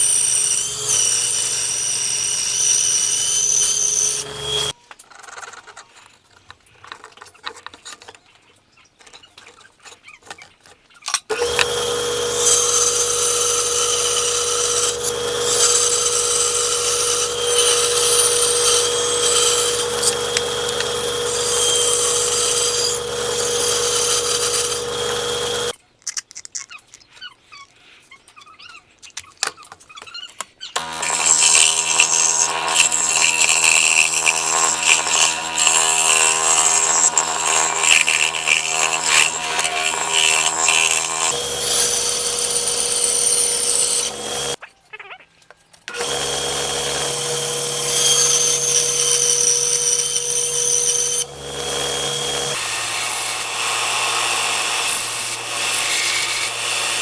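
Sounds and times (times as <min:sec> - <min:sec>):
power tool cutting wood: 0:00.0 - 0:04.8, 0:11.3 - 0:25.8, 0:30.8 - 0:44.6, 0:45.9 - 0:57.0.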